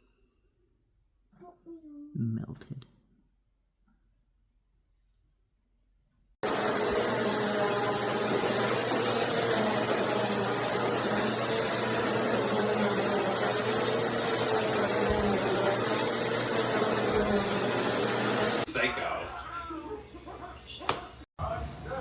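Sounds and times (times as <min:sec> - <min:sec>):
upright vacuum cleaner running: 0:06.4 - 0:18.7.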